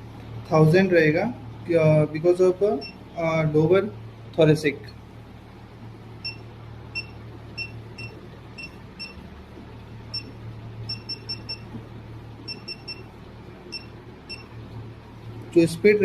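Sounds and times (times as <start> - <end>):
low steady hum: 0.0 - 16.0
high electronic beeps: 6.2 - 9.2, 10.1 - 11.7, 12.5 - 13.1.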